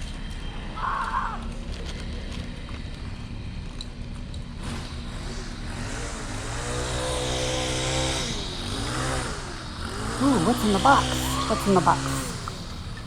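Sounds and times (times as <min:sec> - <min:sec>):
string trimmer engine revving: 0:04.6 - 0:13.0.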